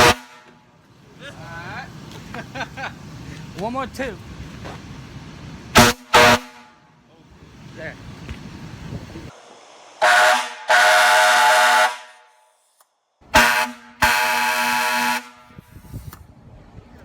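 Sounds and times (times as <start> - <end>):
air horn blasts: 0.0 - 0.7, 5.7 - 6.9, 10.0 - 12.4, 13.2 - 15.7.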